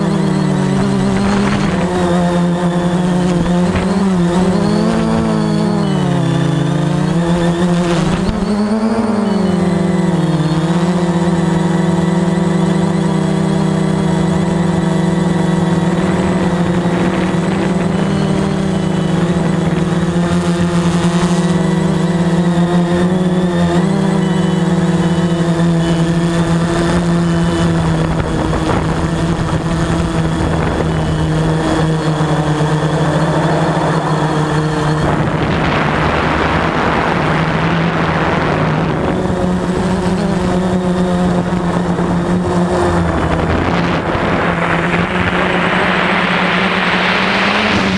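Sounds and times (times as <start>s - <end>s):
drone propellers buzzing: 0.0s - 47.9s
rushing noise: 30.2s - 38.2s.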